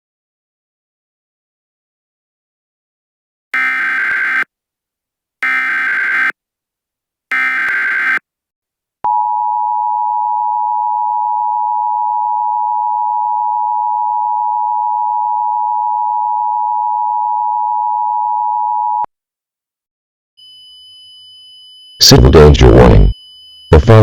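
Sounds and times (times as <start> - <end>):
digital data tones: 7.3 - 8.2, 20.4 - 24.0
two-tone attention signal: 20.4 - 24.0.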